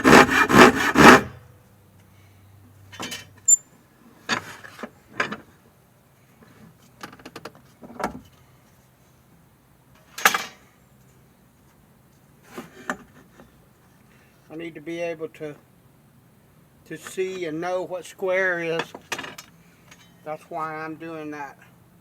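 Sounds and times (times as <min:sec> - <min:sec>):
wood and tools scraping and knocking: 0:00.0 - 0:01.3.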